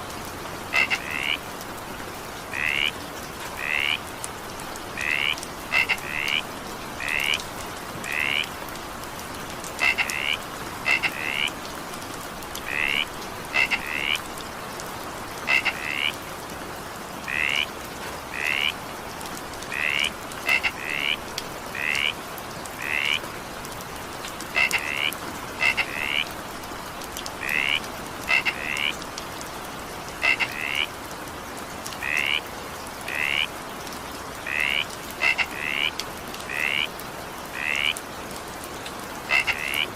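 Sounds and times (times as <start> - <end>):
steady rain hiss: 0.0 - 39.9
frogs croaking: 0.6 - 1.5, 2.2 - 4.1, 4.8 - 8.7, 9.6 - 11.8, 12.5 - 16.2, 17.2 - 18.8, 19.6 - 23.6, 24.4 - 26.4, 27.3 - 31.1, 31.8 - 33.6, 34.3 - 38.2, 39.2 - 39.9.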